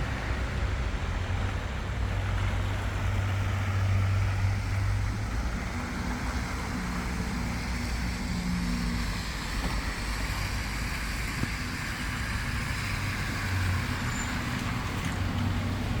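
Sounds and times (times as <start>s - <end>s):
vehicle engine humming: 0.0s - 16.0s
rain hissing: 3.3s - 16.0s.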